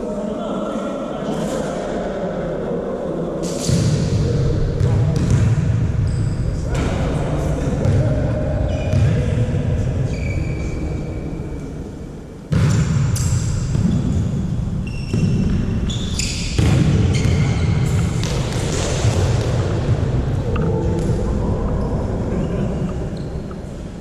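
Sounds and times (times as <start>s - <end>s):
hall and crowd noise: 0.0s - 24.0s
shoes squeaking on court: 12.7s - 18.9s
volleyball strikes: 16.4s - 20.0s.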